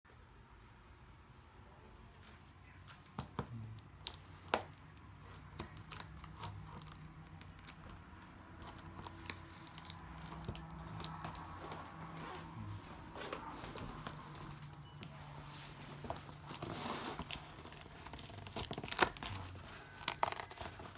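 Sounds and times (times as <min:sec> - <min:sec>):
packaging crinkling and tearing: 0:03.8 - 0:14.8, 0:15.8 - 0:20.9.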